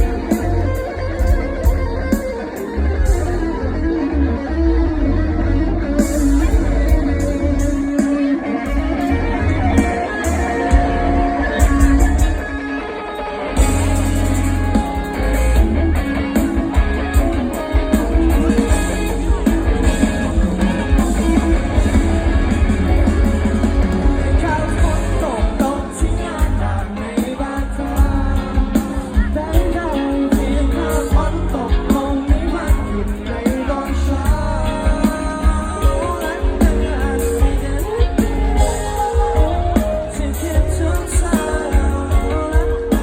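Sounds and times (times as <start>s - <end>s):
person singing: 0.0s - 43.0s
pop-rock band playing: 0.0s - 43.0s.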